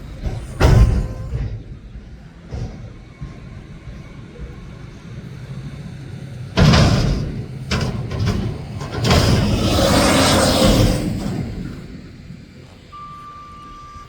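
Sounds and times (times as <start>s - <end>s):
garbage truck engine: 0.0s - 14.0s
loud rushing noise: 6.3s - 12.6s
loud burst of noise: 6.4s - 12.6s.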